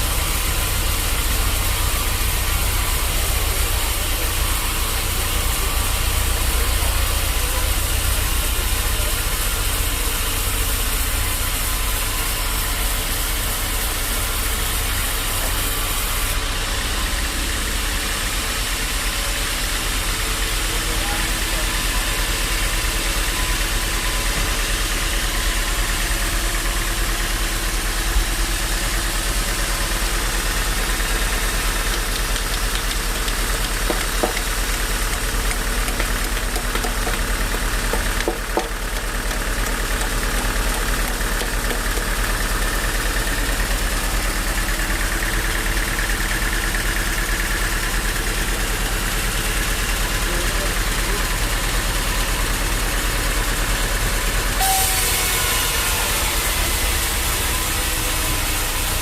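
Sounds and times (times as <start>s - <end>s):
sawmill machinery droning: 0.0s - 59.0s
sharp knocks: 31.9s - 39.8s.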